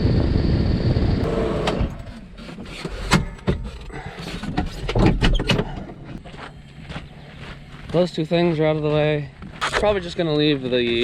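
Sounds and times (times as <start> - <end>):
tractor engine running: 1.0 - 4.5.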